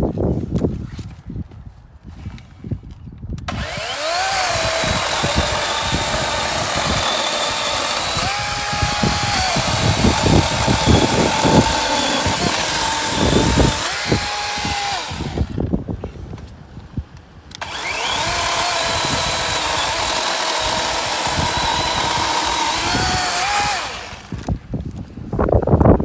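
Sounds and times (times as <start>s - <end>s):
wood crackling: 3.5s - 15.4s, 17.6s - 24.5s
cordless chainsaw whining: 3.5s - 15.6s, 17.5s - 24.6s.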